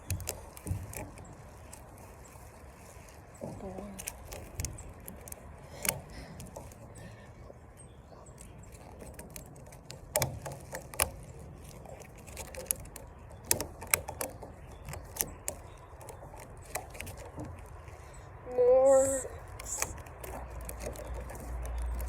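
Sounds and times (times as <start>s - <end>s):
rubber bands snapping: 9.0s - 17.8s.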